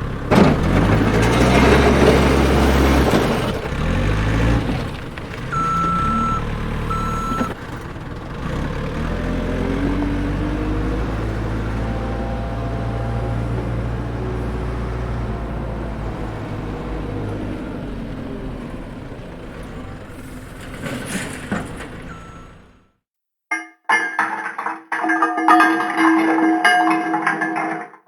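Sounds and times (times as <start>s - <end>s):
reversing alarm beeps: 5.5s - 7.5s.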